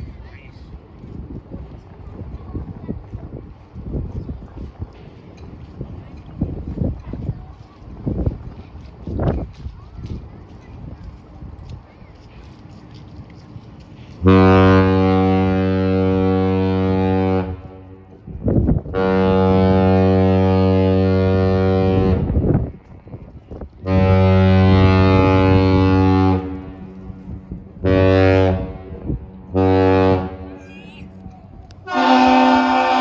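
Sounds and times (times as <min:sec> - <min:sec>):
ship horn blasts: 0:14.2 - 0:18.1, 0:18.9 - 0:22.6, 0:23.8 - 0:33.0.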